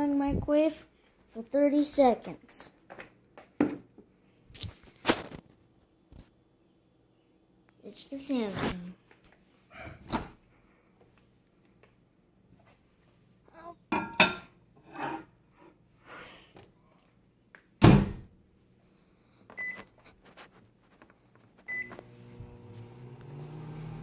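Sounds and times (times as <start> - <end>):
keypad beeps: 21.7 - 21.9
microwave oven humming: 21.7 - 24.0.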